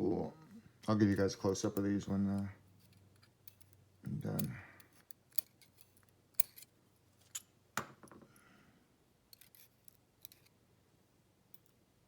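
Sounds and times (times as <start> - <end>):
faint metallic clicks of lock pins: 1.7 - 7.5, 9.3 - 10.6.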